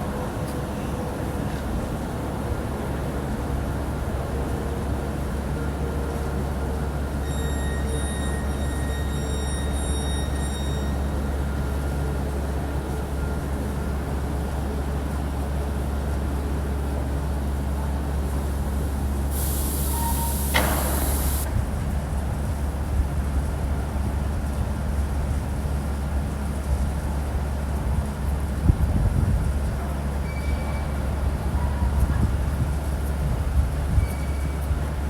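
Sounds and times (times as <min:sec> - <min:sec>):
electric train hum and rumble: 0:00.0 - 0:35.0
sharp hiss: 0:19.3 - 0:21.5.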